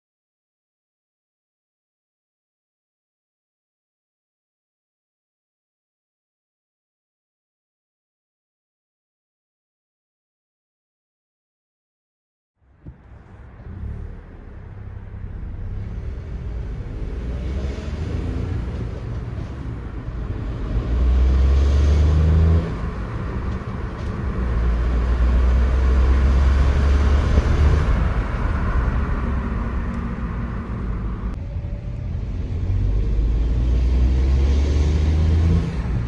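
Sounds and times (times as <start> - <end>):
car engine running: 12.9 - 34.4.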